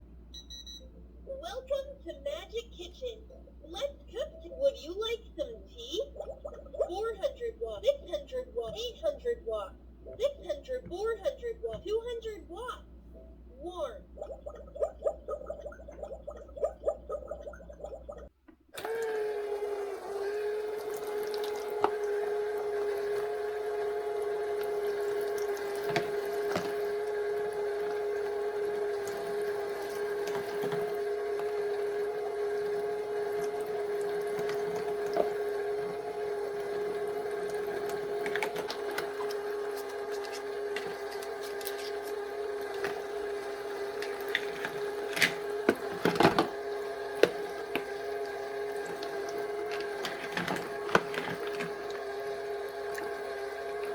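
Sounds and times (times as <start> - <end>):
electric water pump humming: 2.6 - 12.2, 13.7 - 53.9
water trickling: 14.1 - 18.3.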